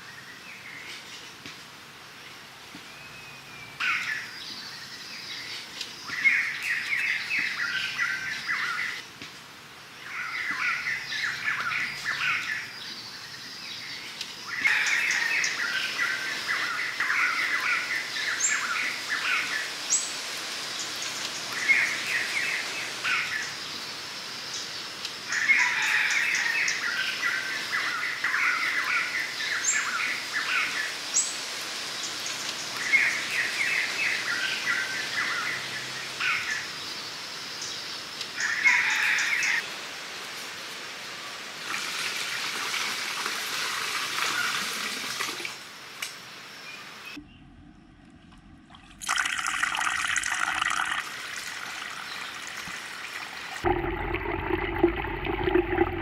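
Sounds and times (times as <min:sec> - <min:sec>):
outdoor background noise: 0:00.0 - 0:56.0
small birds chirping: 0:02.2 - 0:09.2
rushing trickling water: 0:41.5 - 0:45.7, 0:48.3 - 0:56.0.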